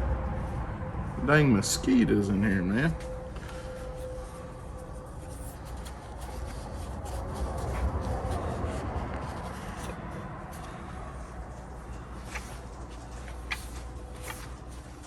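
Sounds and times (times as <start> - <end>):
hands rubbing and shuffling parts: 3.0 - 15.0.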